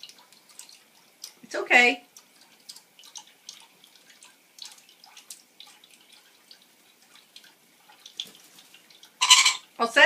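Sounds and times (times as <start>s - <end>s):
water dripping and spattering: 0.0s - 10.0s.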